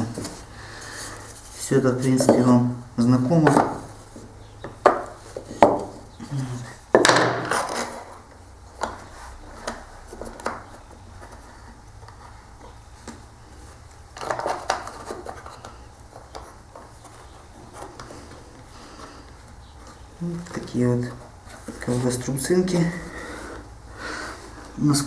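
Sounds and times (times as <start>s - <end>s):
wooden and metal parts clattering: 6.9s - 11.4s, 14.1s - 18.1s.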